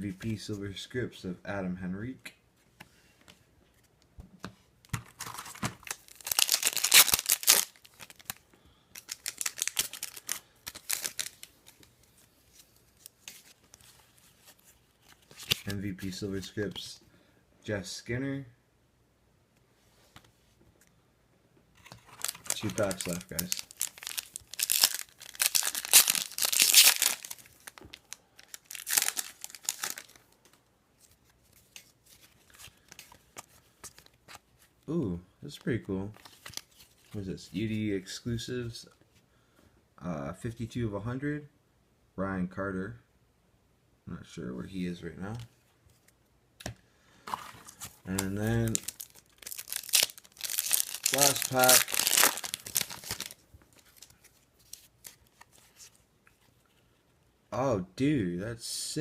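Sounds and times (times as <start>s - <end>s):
cards rustling and ticking: 3.2s - 16.2s, 21.8s - 34.7s, 35.5s - 37.7s, 45.3s - 56.7s
foil wrapper tearing and crinkling: 5.2s - 8.4s, 9.0s - 11.5s, 22.0s - 30.3s, 47.3s - 55.4s.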